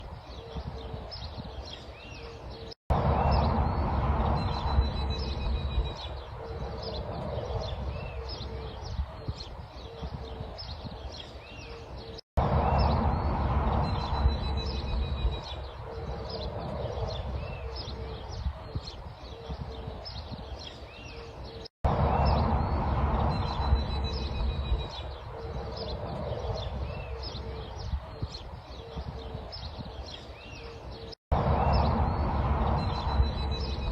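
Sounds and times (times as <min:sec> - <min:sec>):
wild birds chirping: 0:00.0 - 0:33.9
low rushing noise: 0:02.9 - 0:09.1, 0:12.4 - 0:18.6, 0:21.9 - 0:27.8, 0:31.3 - 0:33.9.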